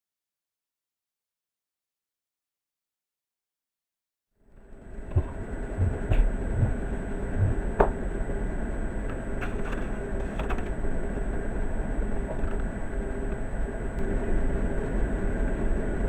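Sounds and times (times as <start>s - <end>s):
cat rumbling: 5.2s - 7.8s.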